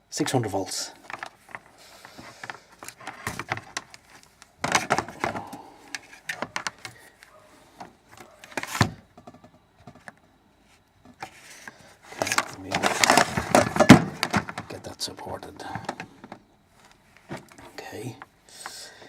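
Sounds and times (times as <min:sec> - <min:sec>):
clattering rustle: 0:01.0 - 0:07.0, 0:11.0 - 0:14.9.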